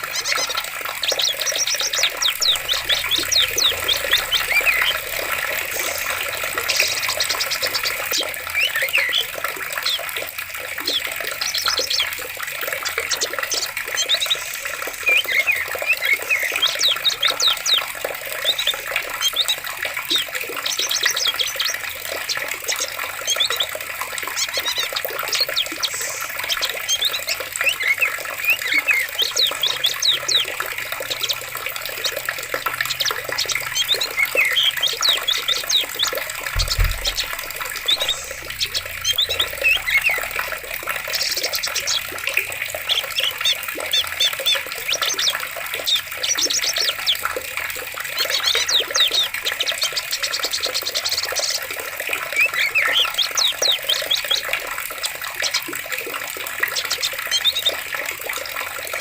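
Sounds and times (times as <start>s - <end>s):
small birds chirping: 0.0s - 47.4s, 48.1s - 58.0s
water rushing: 0.0s - 59.0s
low thud: 36.6s - 38.3s.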